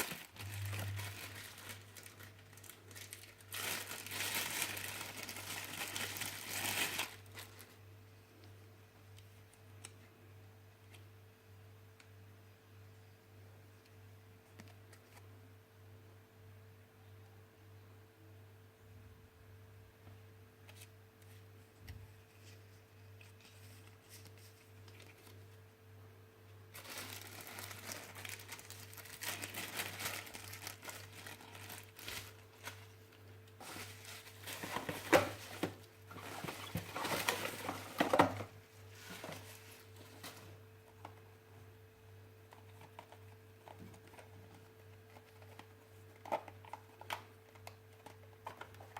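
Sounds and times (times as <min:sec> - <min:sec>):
packaging crinkling and tearing: 0:00.0 - 0:07.8, 0:23.2 - 0:25.5, 0:26.7 - 0:41.2, 0:42.5 - 0:48.9
faint hum: 0:00.0 - 0:48.9.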